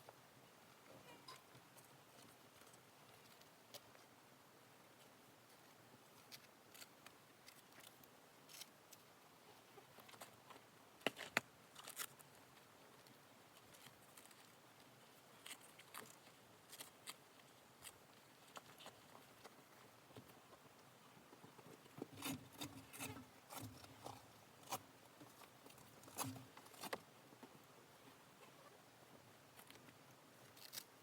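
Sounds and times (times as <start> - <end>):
faint clicks and rustles: 0.0 - 4.2, 4.9 - 31.0.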